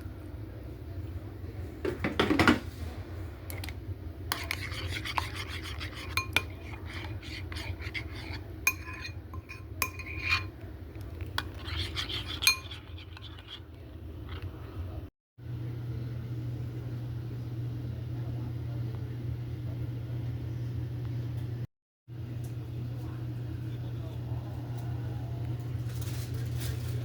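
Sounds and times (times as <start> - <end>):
scraping: 11.2 - 13.7.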